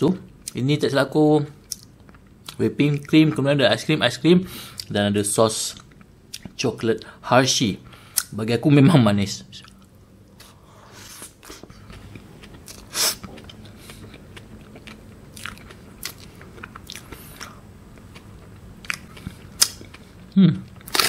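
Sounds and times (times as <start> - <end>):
chewing and crunching pie: 11.2 - 21.0.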